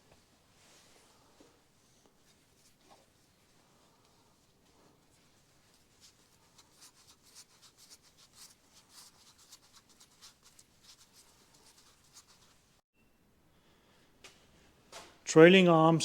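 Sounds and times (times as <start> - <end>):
faint scratching strokes: 0.5 - 12.8.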